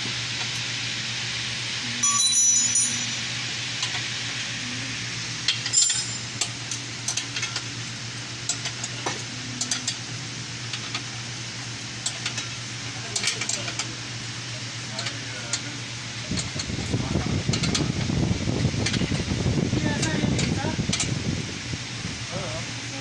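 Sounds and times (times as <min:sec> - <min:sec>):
steady low hum: 0:00.0 - 0:23.0
metallic clinks: 0:02.0 - 0:03.3, 0:05.6 - 0:06.4.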